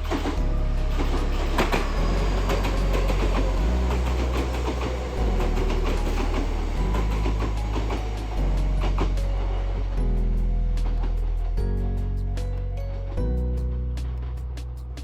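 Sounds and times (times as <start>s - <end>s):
train low hum: 0.0s - 15.0s
train running gear clicking: 0.1s - 10.0s.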